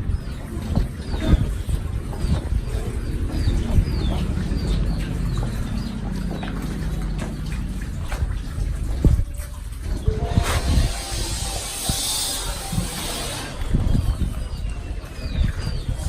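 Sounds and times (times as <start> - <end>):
small birds chirping: 0.0 - 8.7, 13.3 - 16.0
low rumble: 0.0 - 11.9.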